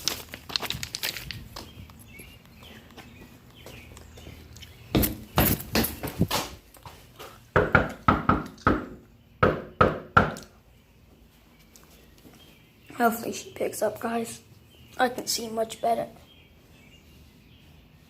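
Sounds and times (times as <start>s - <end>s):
knocking on a door: 7.6s - 10.4s.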